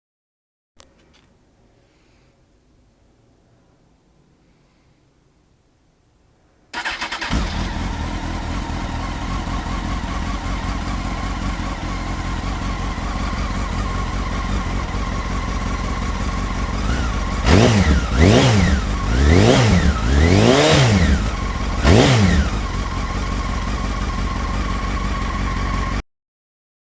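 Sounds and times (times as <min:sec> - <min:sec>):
motorcycle engine starting and idling: 0:06.7 - 0:26.0.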